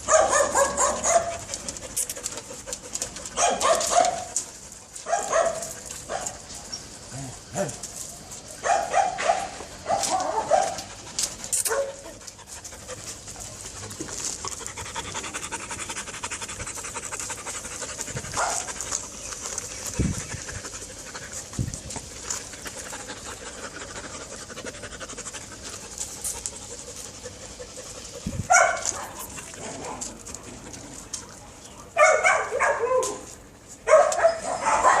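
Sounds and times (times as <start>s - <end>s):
dog panting: 0.6s - 6.4s, 9.5s - 31.4s.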